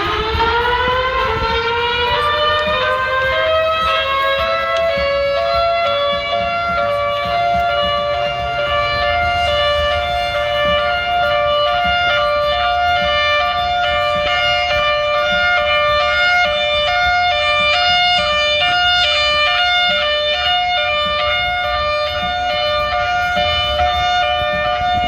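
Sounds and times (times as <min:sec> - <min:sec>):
two-tone siren: 0:00.0 - 0:25.0.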